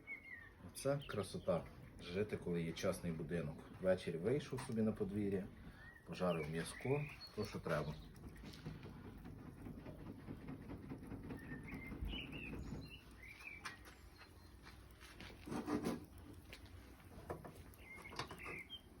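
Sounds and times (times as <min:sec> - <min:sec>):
high bird chirps: 0:00.0 - 0:01.6, 0:05.7 - 0:08.4, 0:11.2 - 0:14.7, 0:17.7 - 0:19.0.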